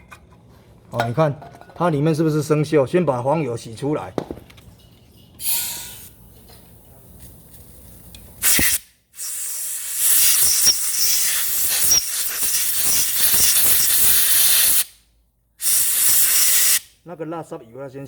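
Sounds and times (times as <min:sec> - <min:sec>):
aerosol spray hissing: 0:15.6 - 0:16.8.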